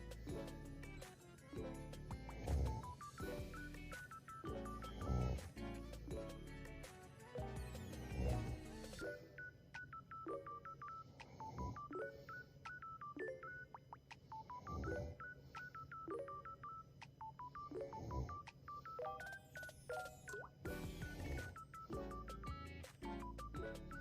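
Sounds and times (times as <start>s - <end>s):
electronic beep melody: 1.6s - 24.0s
person snoring softly: 2.2s - 3.7s, 4.6s - 5.7s, 11.1s - 12.4s, 14.3s - 15.7s, 17.7s - 19.0s, 20.8s - 21.6s.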